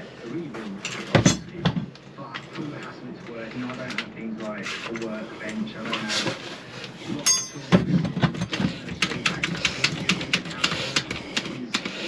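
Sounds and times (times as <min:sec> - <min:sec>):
metallic ring: 0:07.2 - 0:07.6.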